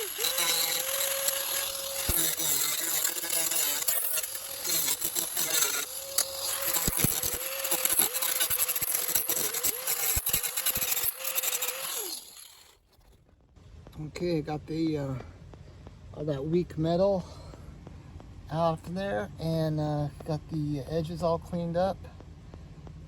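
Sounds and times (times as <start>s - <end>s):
power tool grinding metal: 0.0s - 12.8s.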